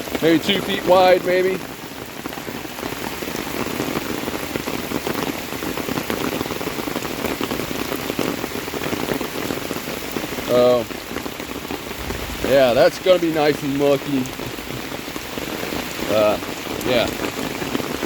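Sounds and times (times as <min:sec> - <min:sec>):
heavy rain falling: 0:00.0 - 0:18.0.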